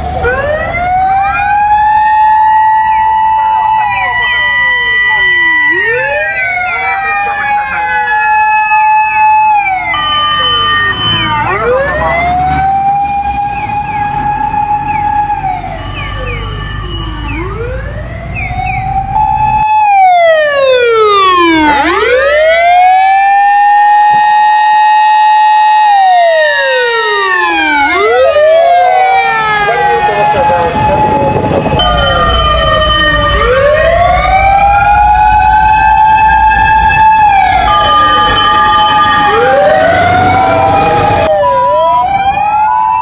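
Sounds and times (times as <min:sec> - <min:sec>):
fire engine siren wailing: 0:00.0 - 0:43.0.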